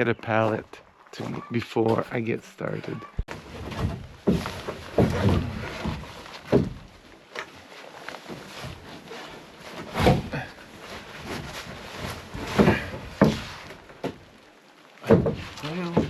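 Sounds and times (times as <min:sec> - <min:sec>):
wooden pallet knocks and thuds: 0:03.3 - 0:06.9, 0:09.9 - 0:10.5, 0:11.3 - 0:14.2, 0:15.0 - 0:16.0.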